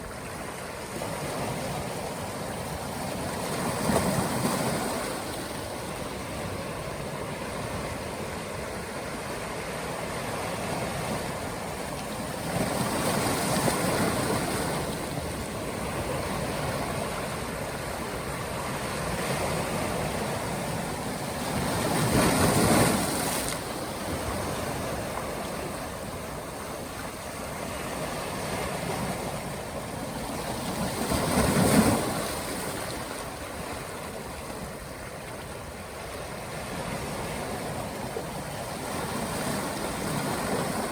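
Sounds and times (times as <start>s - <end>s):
ocean waves breaking: 0.0s - 40.9s.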